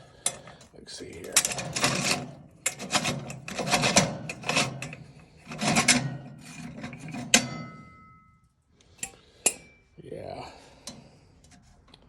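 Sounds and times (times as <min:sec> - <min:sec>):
metal parts rattling and scraping: 0:00.2 - 0:07.8.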